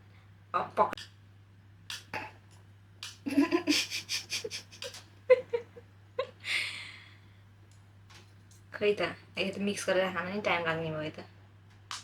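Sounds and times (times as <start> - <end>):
woman giggling: 3.2 - 6.8.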